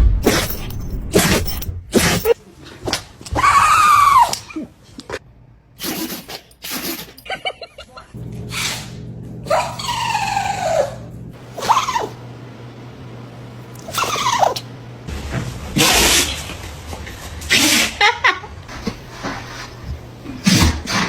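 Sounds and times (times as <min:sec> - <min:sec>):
dogs sneezing: 0:00.2 - 0:03.0, 0:05.8 - 0:07.4, 0:08.5 - 0:09.0, 0:13.9 - 0:14.6, 0:15.8 - 0:16.5, 0:17.5 - 0:18.1, 0:20.3 - 0:21.0
dog pitched cries: 0:03.3 - 0:04.5, 0:09.4 - 0:12.2, 0:13.9 - 0:14.7.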